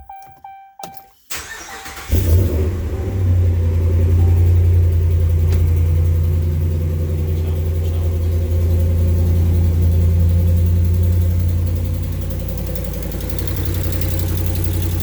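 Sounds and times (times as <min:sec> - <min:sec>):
engine running: 0:01.3 - 0:15.0
engine ticking: 0:01.3 - 0:15.0.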